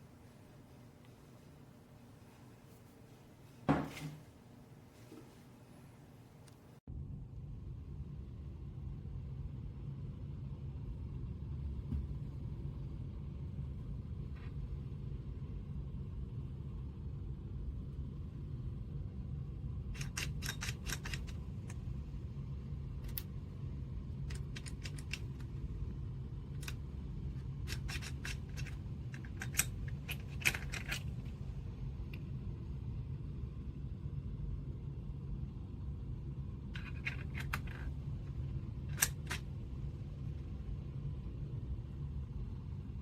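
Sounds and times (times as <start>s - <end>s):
steady low hum: 0.0s - 43.0s
metal clicks and scrapes: 20.0s - 21.8s, 24.3s - 25.5s, 26.6s - 31.4s, 36.8s - 38.0s, 38.9s - 39.5s.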